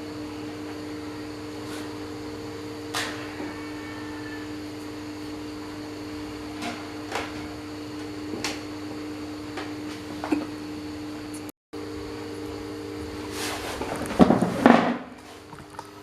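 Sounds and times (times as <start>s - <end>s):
steady electrical hum: 0.0s - 16.0s.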